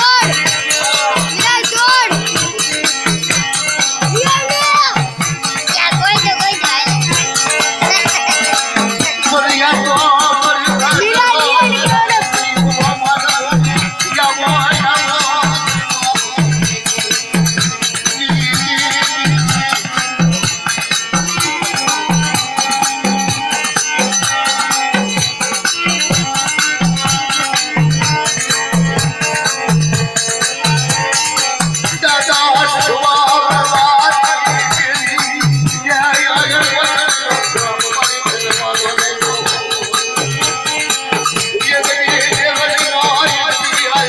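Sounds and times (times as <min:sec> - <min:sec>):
melody: 0:00.0 - 0:16.6
low drum beat: 0:00.0 - 0:22.5.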